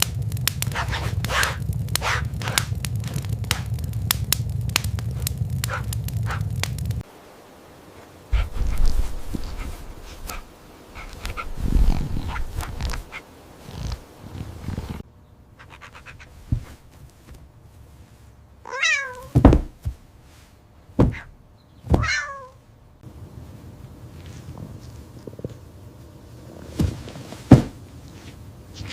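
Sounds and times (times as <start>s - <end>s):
rumbling: 0.0s - 7.0s, 8.3s - 15.0s, 15.6s - 18.6s
cat meowing: 18.6s - 19.4s, 21.9s - 22.6s
sharp thumps and knocks: 19.3s - 20.0s, 21.0s - 22.2s.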